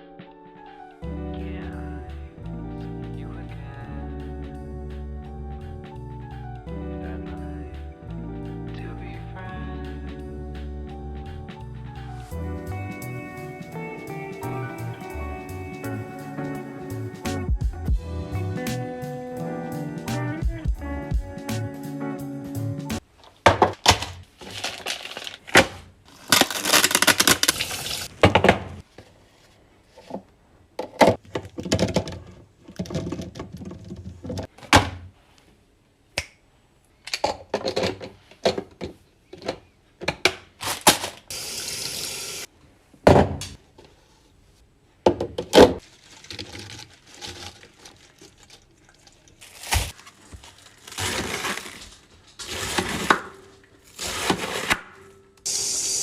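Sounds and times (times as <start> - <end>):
rustling or pouring noise: 24.3 - 28.1, 45.8 - 53.1
containers being set down: 30.8 - 35.1.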